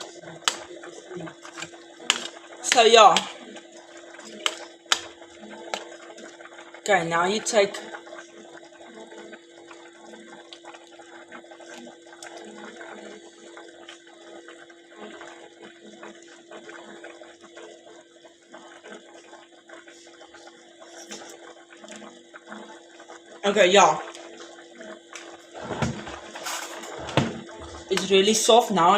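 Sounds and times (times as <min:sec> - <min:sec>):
liquid bubbling in a pot: 0:00.0 - 0:28.9.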